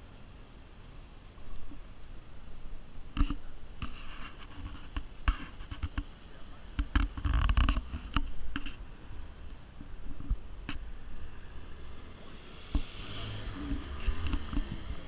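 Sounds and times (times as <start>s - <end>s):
low engine rumble: 0.0s - 15.0s
exhaust popping and crackling: 1.4s - 15.0s.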